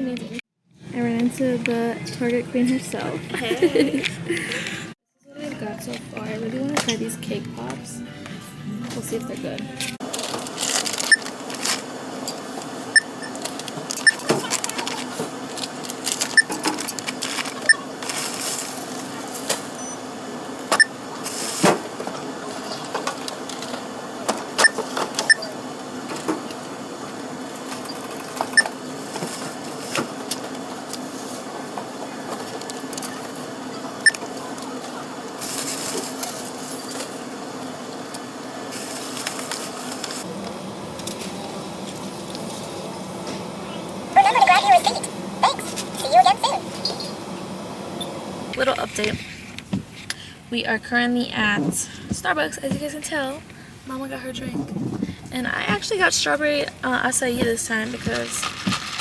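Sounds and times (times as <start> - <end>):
items clunking and rustling: 5.4 - 19.8, 48.6 - 50.3, 54.4 - 59.0.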